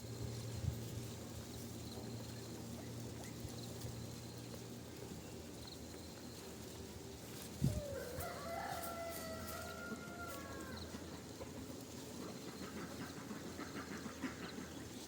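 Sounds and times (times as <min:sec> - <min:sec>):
rooster crowing: 0:07.7 - 0:11.1.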